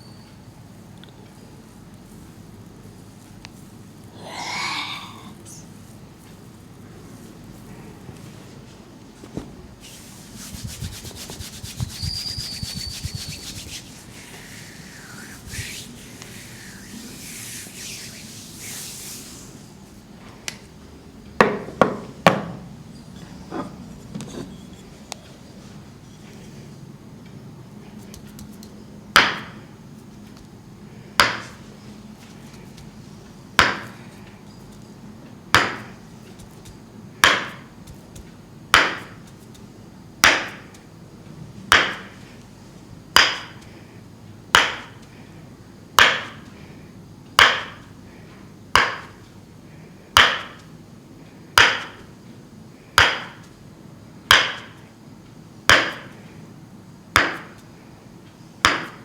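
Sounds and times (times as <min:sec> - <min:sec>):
wooden mallet tapping wooden wedge: 0:36.5 - 0:39.1, 0:44.6 - 0:44.9, 0:47.4 - 0:47.8, 0:50.2 - 0:50.6, 0:51.6 - 0:52.0.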